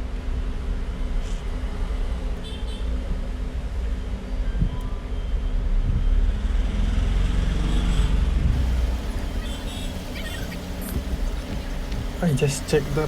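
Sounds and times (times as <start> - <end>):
road traffic rumble: 6.6 - 13.0.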